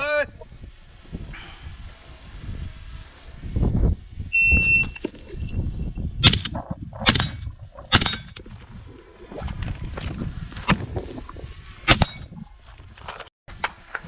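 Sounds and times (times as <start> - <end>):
low rumbling wind: 0.0 - 14.0
rifle shots: 6.2 - 8.4.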